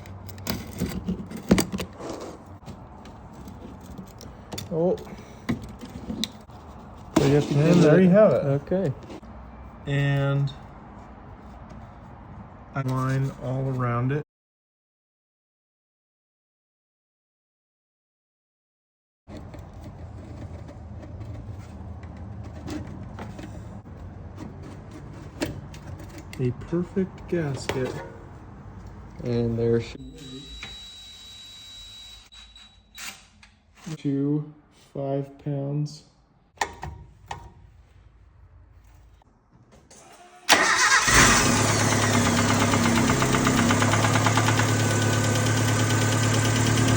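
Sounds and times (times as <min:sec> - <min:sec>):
low mechanical hum: 0:19.3 - 0:31.4
starter motor cranking: 0:40.3 - 0:46.9
pickup truck engine idling: 0:40.6 - 0:46.9.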